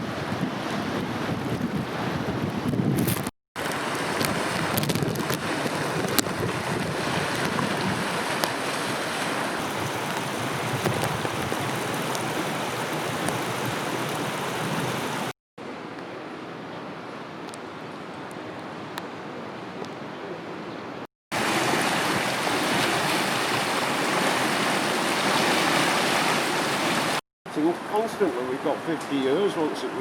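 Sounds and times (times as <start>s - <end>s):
wind on microphone: 0.0s - 15.3s
floodwater rushing: 3.1s - 15.3s, 21.3s - 30.0s.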